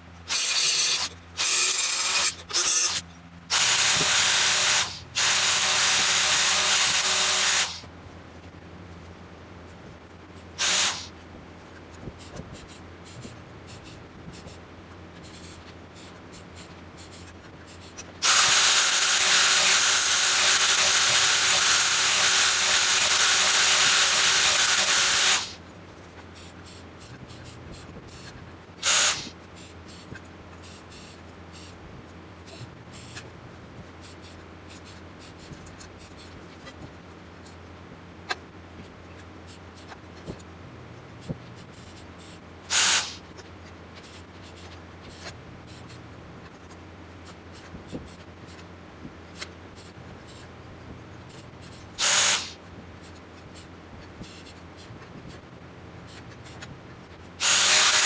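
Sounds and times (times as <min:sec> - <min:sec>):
welding arc hiss: 0:00.3 - 0:07.9, 0:10.6 - 0:11.1, 0:18.2 - 0:25.6, 0:28.8 - 0:29.4, 0:42.7 - 0:43.3, 0:52.0 - 0:52.6, 0:57.4 - 0:58.0.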